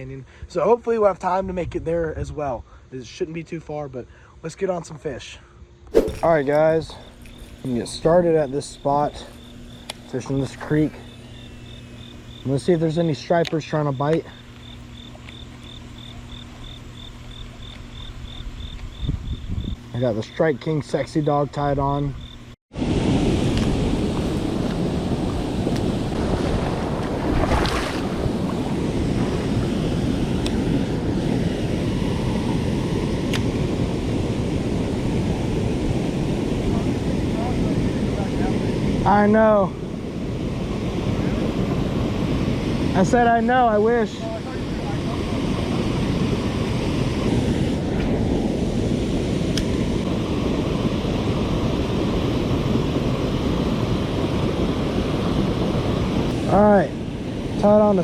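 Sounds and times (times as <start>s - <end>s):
water swish: 5.9s - 7.9s, 23.6s - 29.8s
creek water rushing: 22.8s - 30.8s.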